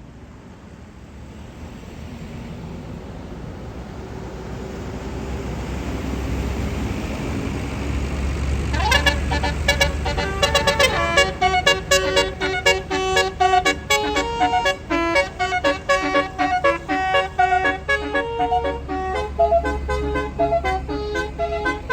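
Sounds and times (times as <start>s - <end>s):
bus engine rumble: 0.0s - 21.9s
bus horn playing a tune: 8.6s - 21.9s.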